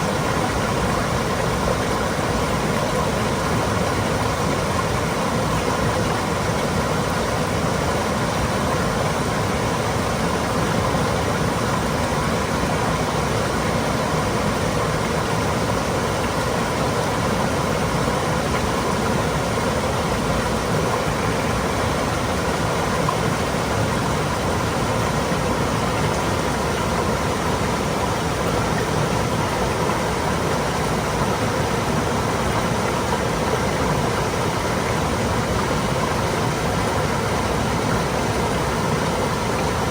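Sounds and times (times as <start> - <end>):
stream flowing over rocks: 0.0 - 39.9.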